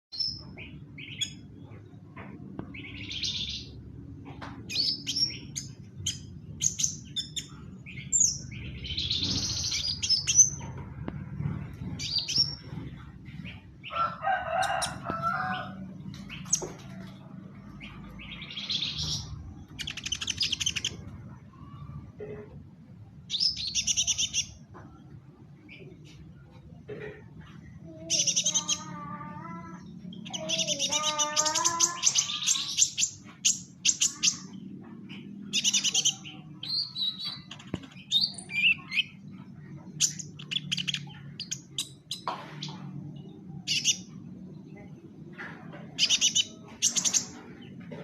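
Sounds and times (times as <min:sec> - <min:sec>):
songbird chirping and trilling: 0:00.1 - 0:48.0.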